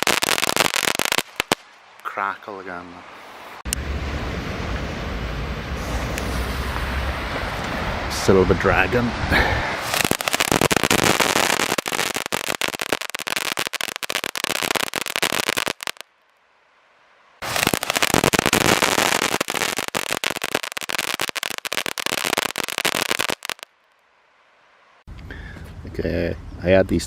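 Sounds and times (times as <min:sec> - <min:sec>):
firework fountain crackling over hiss: 0:00.0 - 0:02.2, 0:09.4 - 0:16.1, 0:17.4 - 0:23.7.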